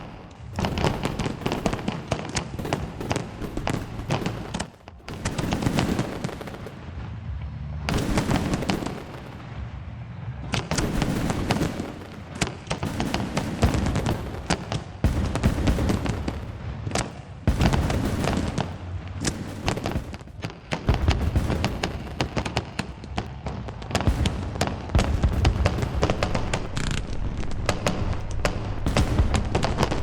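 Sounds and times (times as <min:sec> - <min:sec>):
deep rumbling booms: 0:00.0 - 0:30.0
fireworks bangs and crackles: 0:00.0 - 0:30.0.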